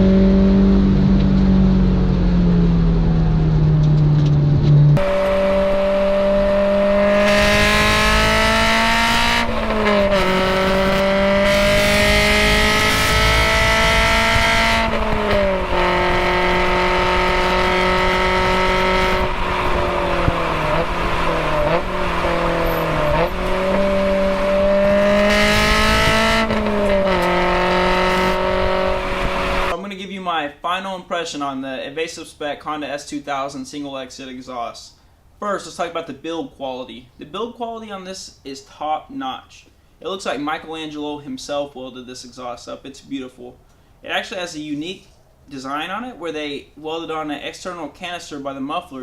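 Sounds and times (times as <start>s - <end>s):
car engine droning at cruise: 0.0s - 29.8s.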